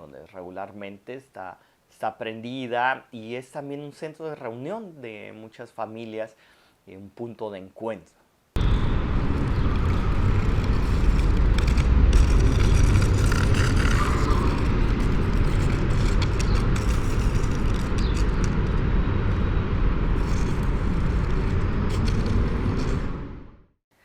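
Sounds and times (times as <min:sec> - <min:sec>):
even wash of noise: 0:08.6 - 0:23.3
road traffic rumble: 0:08.6 - 0:23.5.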